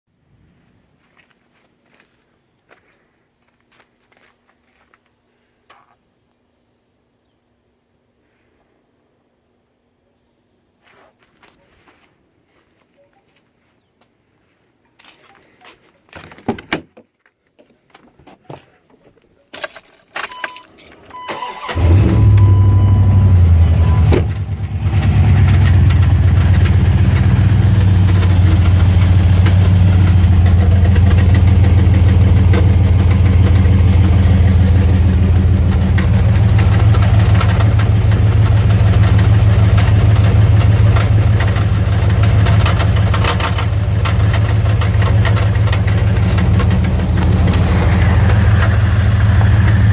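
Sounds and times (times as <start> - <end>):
engine cranking and idling: 21.0 - 49.9
engine rattle: 21.4 - 49.9.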